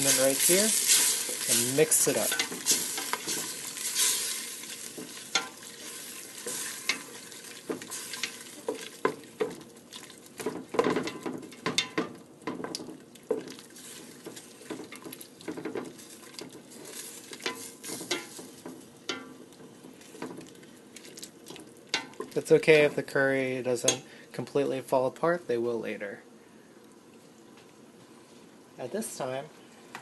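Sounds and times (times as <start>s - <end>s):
spatula scraping a pot: 0.0s - 7.1s
food sizzling: 0.0s - 23.1s.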